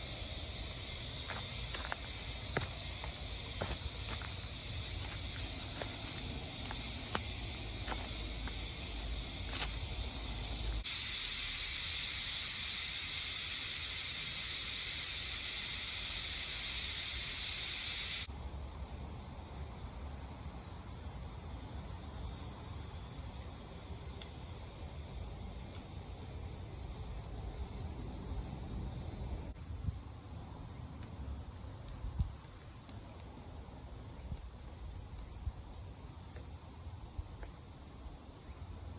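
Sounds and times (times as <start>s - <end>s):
high-pitched insect drone: 0.0s - 23.2s.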